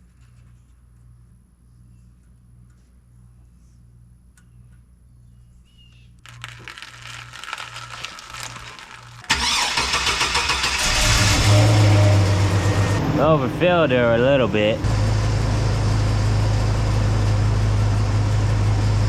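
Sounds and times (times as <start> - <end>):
pickup truck engine starting: 8.2 - 19.0.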